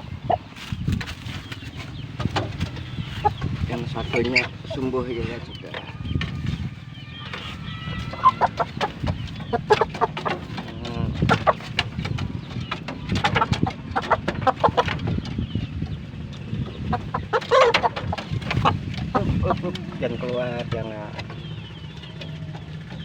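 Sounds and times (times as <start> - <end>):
chicken clucking: 0.0 - 23.0.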